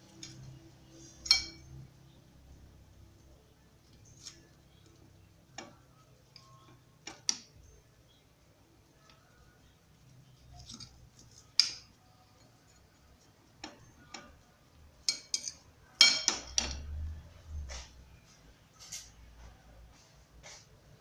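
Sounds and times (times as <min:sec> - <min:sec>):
kitchen utensils and dishes clicking: 0:00.0 - 0:01.8, 0:15.0 - 0:17.0.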